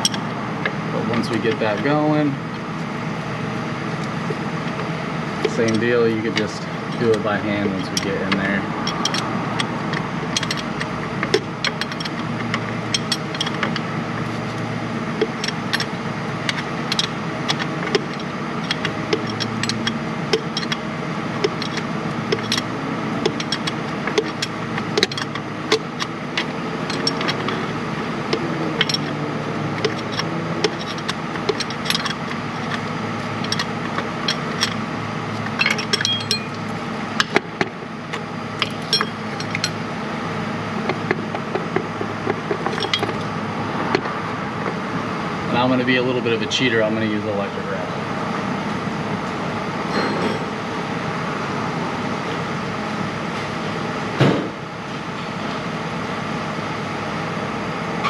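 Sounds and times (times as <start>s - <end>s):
steady background hum: 0.0s - 58.0s
wrench clicking on bolt: 7.9s - 13.8s, 29.8s - 32.8s.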